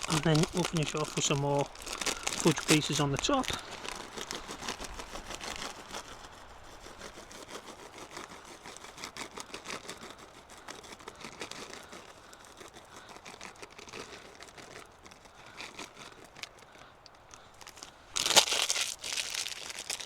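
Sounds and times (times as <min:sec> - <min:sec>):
plastic packet crinkling: 0:00.0 - 0:06.4, 0:07.1 - 0:20.0
small irregular clicks: 0:07.0 - 0:20.0.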